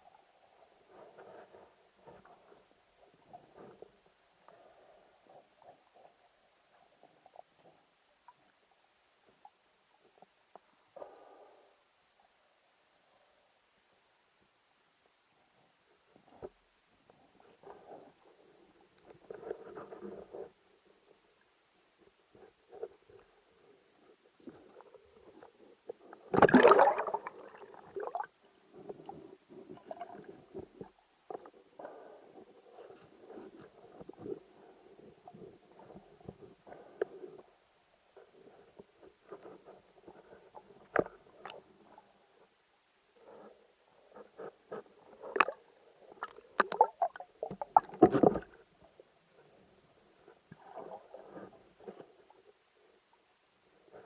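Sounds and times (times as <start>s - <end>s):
underwater bubbling and gurgling: 22.0s - 42.5s, 43.2s - 53.0s
rush of bubbles: 26.3s - 28.3s
underwater clicks and knocks: 40.8s - 41.6s, 46.2s - 48.6s.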